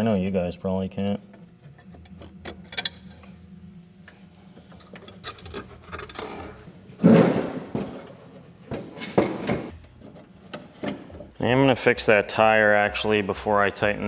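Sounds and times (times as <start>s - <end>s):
metal clunk and scrape: 1.2s - 11.5s.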